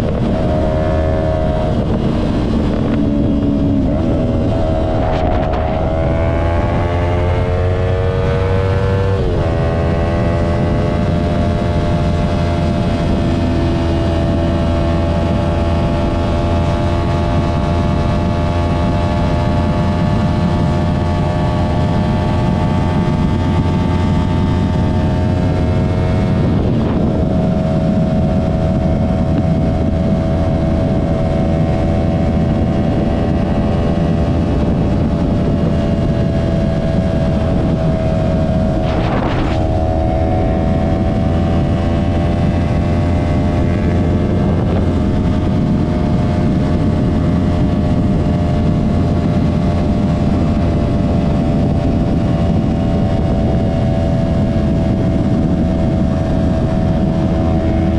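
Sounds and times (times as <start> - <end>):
motorcycle engine pulling: 0.0 - 7.9, 21.8 - 45.8
wind noise rumbling: 0.0 - 57.9.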